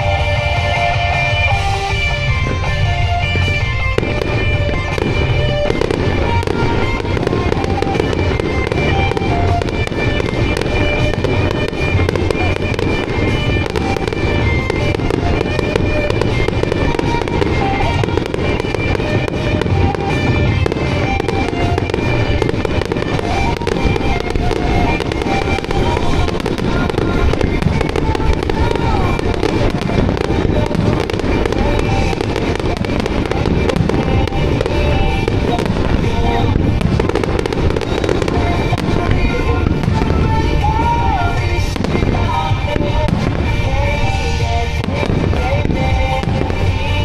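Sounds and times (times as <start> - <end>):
fireworks bursting and crackling: 0.0 - 47.0
pop song: 22.6 - 47.0.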